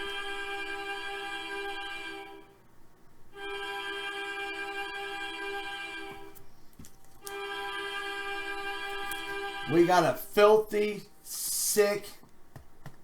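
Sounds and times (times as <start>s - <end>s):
sustained music chord: 0.0s - 2.6s, 3.3s - 6.4s, 7.3s - 11.0s.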